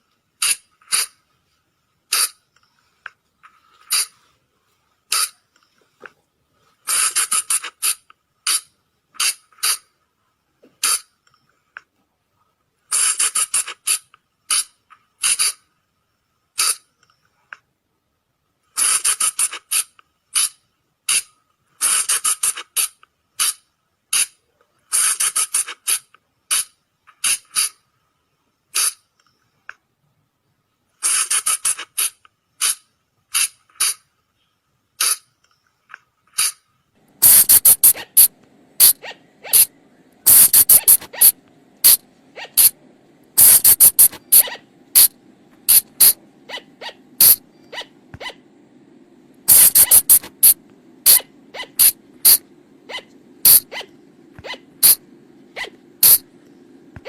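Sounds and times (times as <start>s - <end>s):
steady low hum: 37.0s - 57.0s
animal shrill shrieks: 37.8s - 39.7s.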